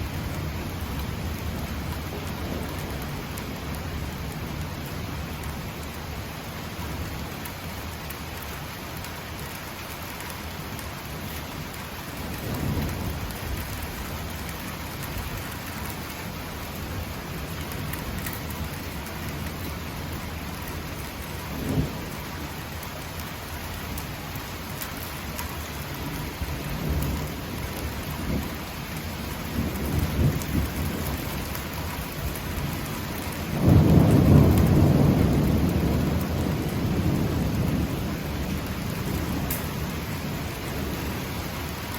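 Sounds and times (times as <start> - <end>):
thunder rumbling: 17.0 - 22.6, 26.1 - 41.8.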